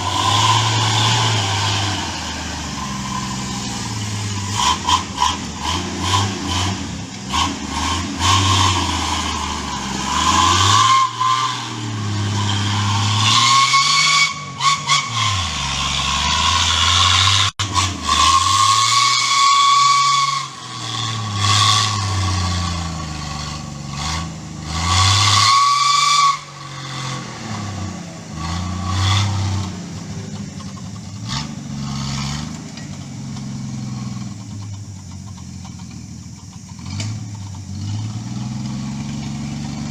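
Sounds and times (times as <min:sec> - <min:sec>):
engine revving under load: 0:00.0 - 0:39.9
turbo whistle: 0:10.2 - 0:22.3, 0:25.2 - 0:26.7.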